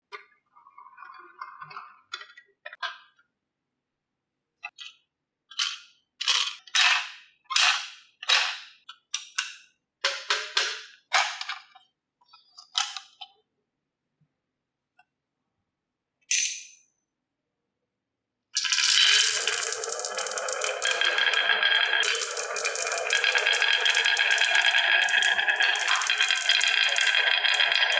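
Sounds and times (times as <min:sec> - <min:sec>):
marbles clattering down a marble run: 0:18.6 - 0:27.9.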